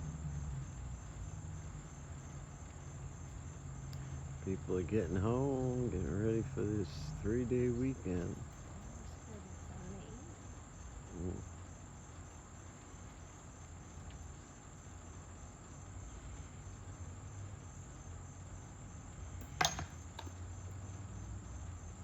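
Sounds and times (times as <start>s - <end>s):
insects chirping: 0.0s - 22.0s
low steady rumble: 0.0s - 22.0s.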